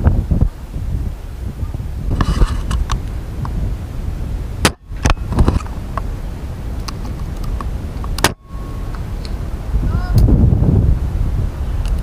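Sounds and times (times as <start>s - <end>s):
wind rumble on microphone: 0.0s - 12.0s
airsoft rifle shot: 8.2s - 8.4s.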